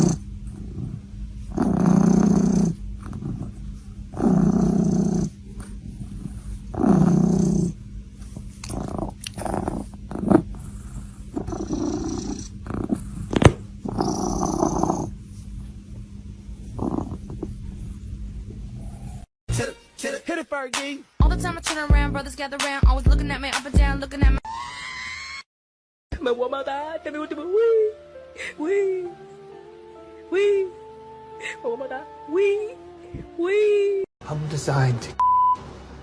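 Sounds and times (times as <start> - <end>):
pet growling: 0.0 - 15.2, 16.6 - 19.3.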